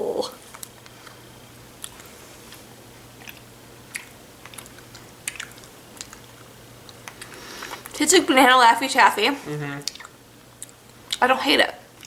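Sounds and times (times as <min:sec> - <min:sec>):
low steady hum: 0:00.0 - 0:12.0
wet mouth clicks chewing: 0:01.8 - 0:02.1, 0:03.2 - 0:08.0, 0:09.8 - 0:11.2.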